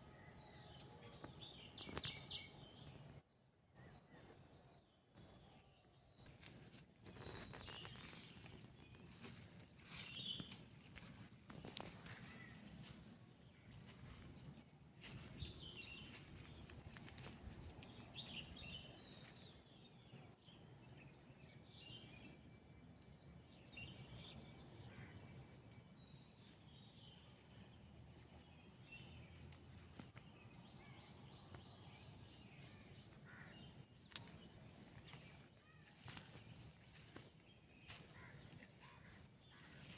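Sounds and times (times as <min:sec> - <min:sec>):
insects chirping: 0:06.2 - 0:20.3, 0:22.2 - 0:39.9.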